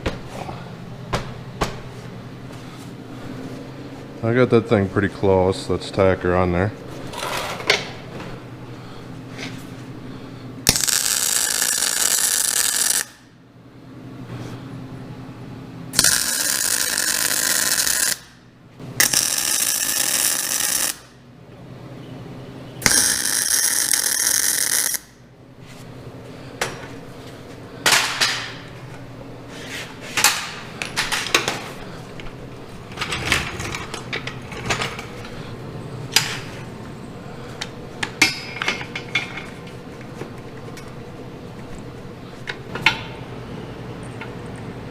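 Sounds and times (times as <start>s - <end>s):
welder welding: 10.6s - 13.3s, 15.9s - 18.4s, 19.0s - 21.2s, 22.8s - 25.2s
metal parts and tools clanking: 32.9s - 35.4s, 38.0s - 41.0s.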